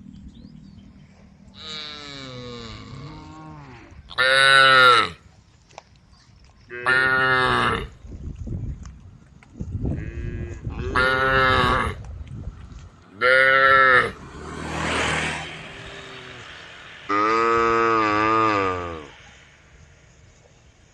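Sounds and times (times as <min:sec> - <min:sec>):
cattle mooing: 0:10.0 - 0:12.0, 0:13.2 - 0:14.2, 0:17.1 - 0:19.1
rushing noise: 0:13.2 - 0:20.9.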